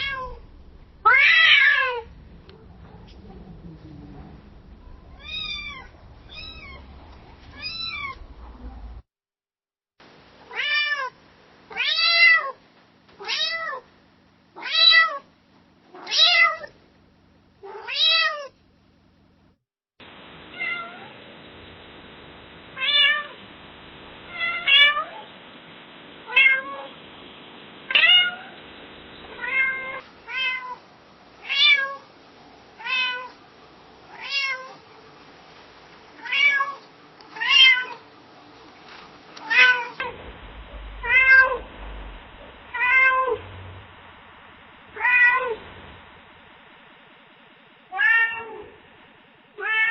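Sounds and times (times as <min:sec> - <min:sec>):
cat meowing: 0:00.0 - 0:00.4, 0:05.1 - 0:06.9, 0:07.5 - 0:08.2, 0:29.3 - 0:30.8, 0:47.9 - 0:48.8, 0:49.6 - 0:49.9.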